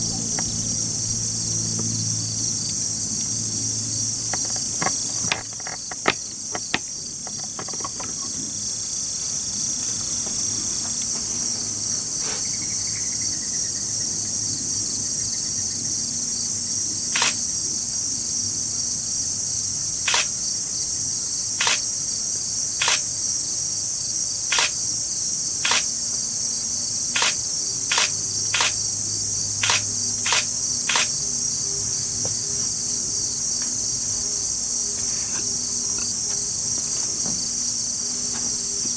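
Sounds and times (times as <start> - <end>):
insects trilling: 0.0 - 38.9
short sharp clicks: 17.2 - 17.4, 20.1 - 20.3, 21.6 - 21.8, 24.5 - 24.8, 25.7 - 25.9, 27.2 - 28.8, 29.6 - 31.1.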